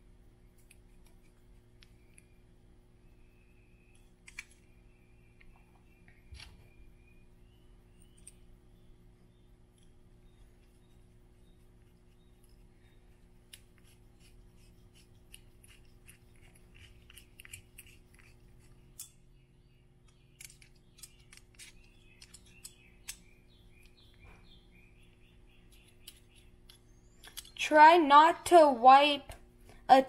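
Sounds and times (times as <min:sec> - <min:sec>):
small parts clicking and scraping: 0:00.5 - 0:02.4, 0:03.9 - 0:04.8, 0:07.9 - 0:08.5, 0:09.7 - 0:19.3, 0:20.0 - 0:24.3, 0:25.6 - 0:27.6.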